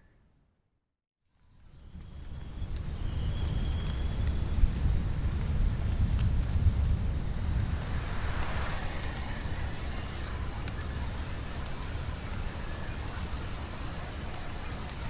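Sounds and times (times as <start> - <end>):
steady rain hiss: 2.9 - 15.0
deep low rumble: 6.0 - 11.6.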